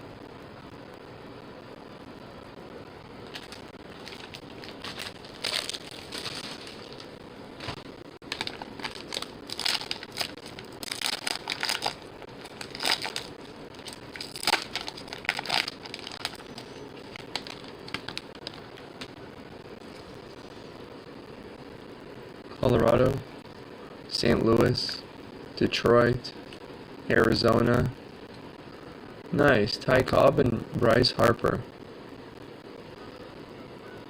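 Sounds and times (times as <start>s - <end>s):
foil wrappers crinkling and tearing: 3.2s - 19.1s.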